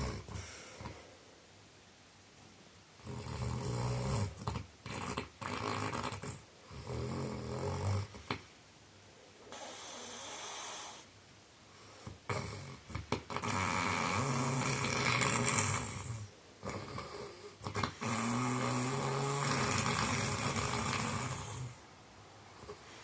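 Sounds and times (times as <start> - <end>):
man snoring heavily: 0.0 - 0.9, 3.1 - 8.1, 9.5 - 11.0, 12.3 - 21.8
snorts: 0.0 - 1.2, 3.0 - 8.4, 9.5 - 11.1, 12.0 - 21.8.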